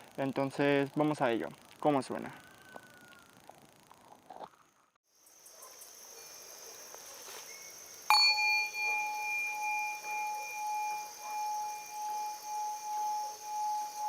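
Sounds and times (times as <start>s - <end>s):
singing bowl ringing: 8.1s - 14.0s.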